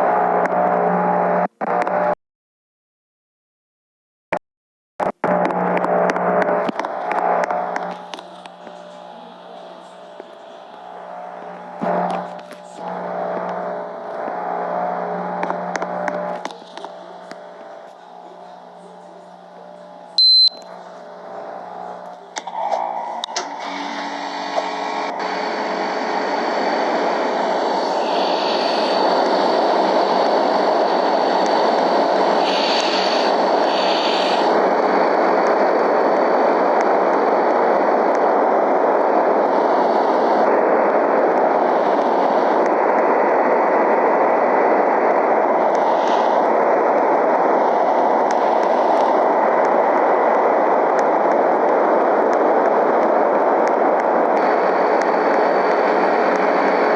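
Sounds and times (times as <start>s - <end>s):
air conditioner whooshing: 6.9s - 34.6s.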